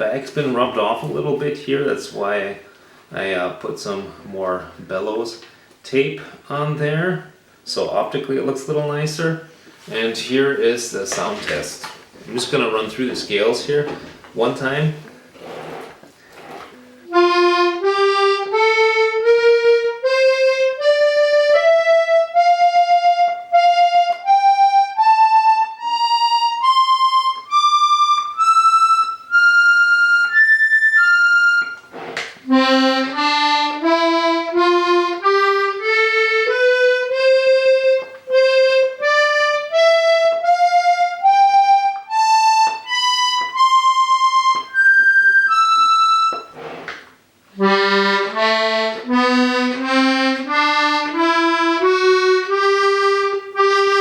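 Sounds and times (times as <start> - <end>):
accordion playing scales: 16.8 - 54.0.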